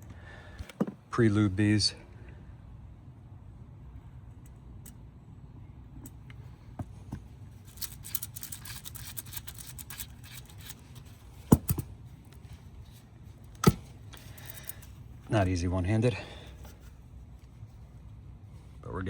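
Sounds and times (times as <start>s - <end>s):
low steady hum: 0.0s - 19.0s
light clicks of parts: 6.0s - 15.1s.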